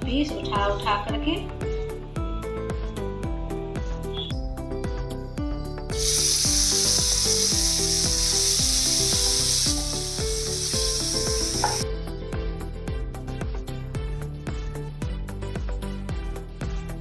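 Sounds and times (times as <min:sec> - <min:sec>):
background music with steady beat: 0:00.0 - 0:17.0
chicken sizzling in hot oil: 0:05.9 - 0:11.8.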